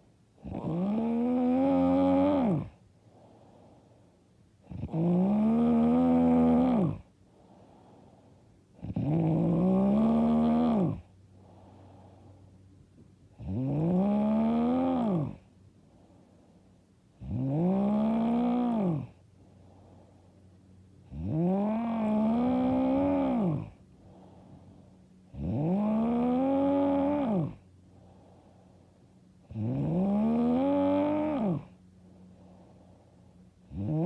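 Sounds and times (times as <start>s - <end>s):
woman snoring loudly: 0.4s - 2.8s, 4.7s - 7.1s, 8.8s - 11.1s, 13.4s - 15.4s, 17.2s - 19.2s, 21.1s - 23.8s, 25.3s - 27.6s, 29.5s - 31.8s, 33.7s - 34.0s.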